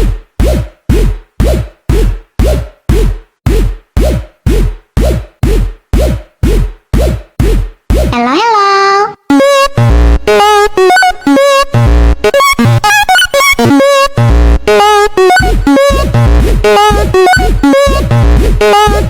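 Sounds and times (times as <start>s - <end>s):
electronic dance music: 8.0s - 19.0s.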